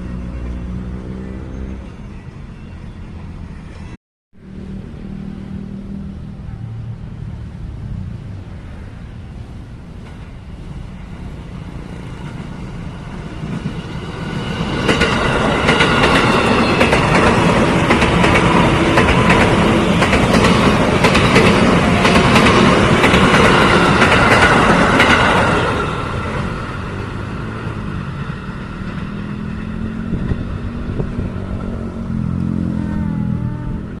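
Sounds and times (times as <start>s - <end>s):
train wheels clattering: 13.5s - 26.9s.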